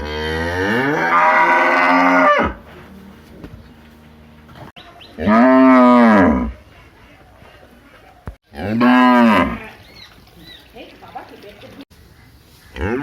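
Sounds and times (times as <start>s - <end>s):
cow mooing: 0.0s - 2.6s, 8.6s - 9.8s.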